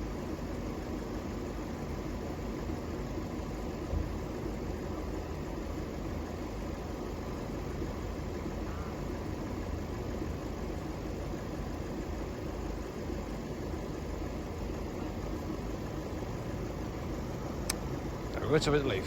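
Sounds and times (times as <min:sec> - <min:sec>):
diesel train engines idling: 0:04.9 - 0:19.0.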